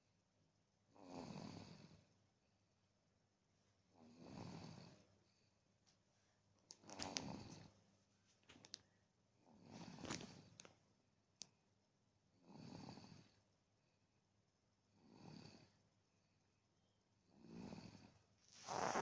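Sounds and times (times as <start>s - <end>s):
baby snoring softly: 4.0s - 5.0s, 17.4s - 19.0s.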